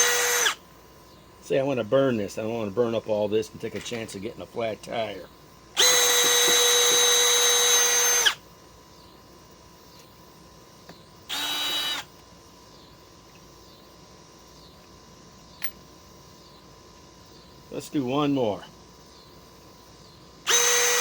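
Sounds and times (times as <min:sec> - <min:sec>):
drill motor whining: 0:00.0 - 0:00.6, 0:05.8 - 0:08.4, 0:11.3 - 0:12.2, 0:20.4 - 0:21.0.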